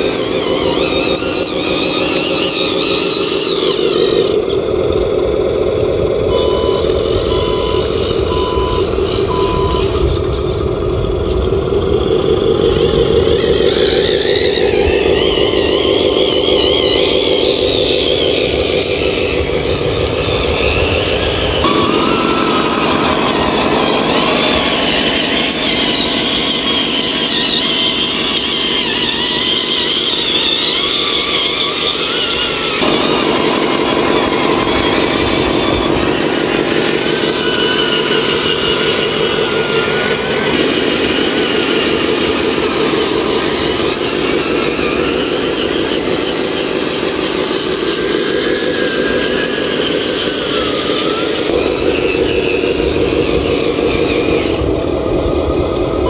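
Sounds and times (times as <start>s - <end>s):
small electric motor whining: 0.0s - 56.0s.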